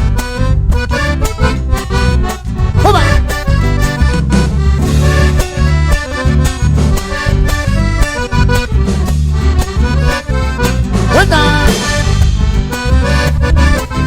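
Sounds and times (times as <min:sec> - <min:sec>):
accordion dance music: 0:00.0 - 0:14.0
bass line and beat: 0:00.0 - 0:14.0.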